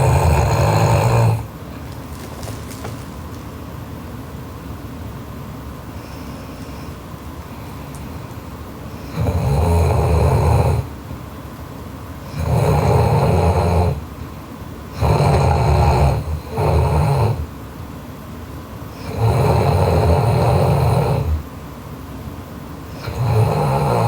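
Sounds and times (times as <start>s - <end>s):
woman snoring loudly: 0.0s - 1.5s, 9.0s - 10.9s, 12.3s - 14.1s, 15.0s - 17.5s, 19.0s - 21.5s, 22.9s - 24.0s.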